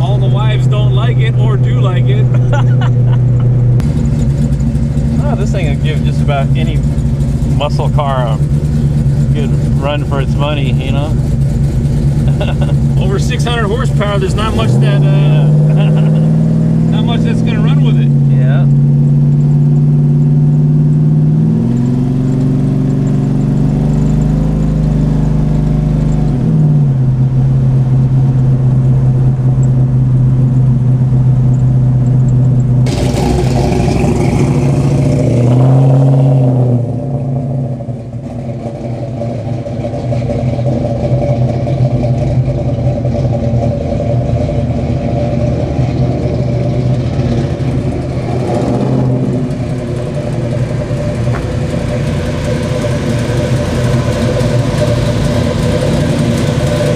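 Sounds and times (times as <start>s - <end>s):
car engine running: 0.0s - 56.9s.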